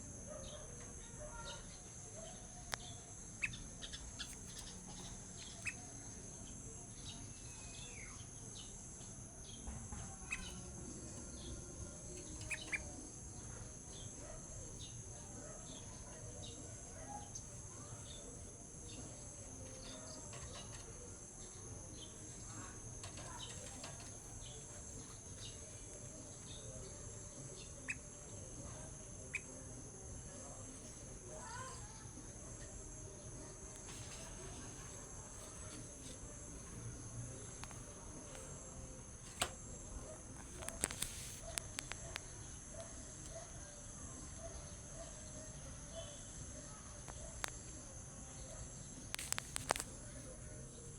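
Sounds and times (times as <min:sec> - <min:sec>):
bird chirping: 0:00.3 - 0:47.7.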